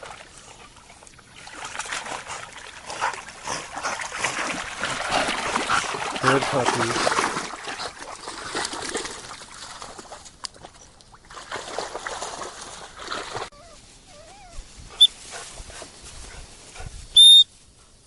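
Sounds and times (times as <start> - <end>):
puppy whimpering: 13.5 - 15.1
dog whistle pip: 17.2 - 17.5.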